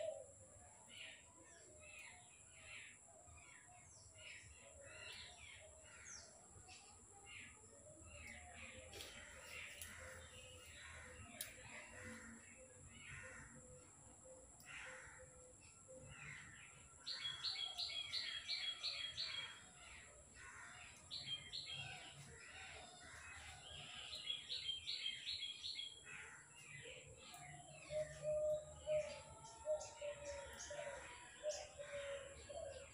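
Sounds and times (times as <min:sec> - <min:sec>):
small birds chirping: 0:00.0 - 0:32.9.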